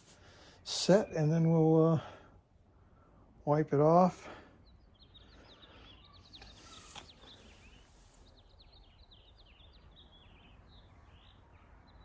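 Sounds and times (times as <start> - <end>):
small birds chirping: 4.4 - 12.0.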